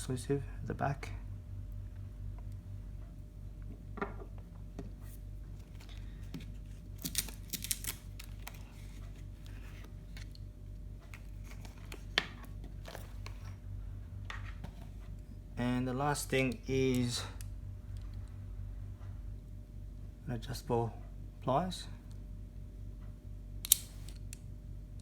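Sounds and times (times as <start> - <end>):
steady low hum: 0.0 - 25.0
sharp click: 23.6 - 24.4.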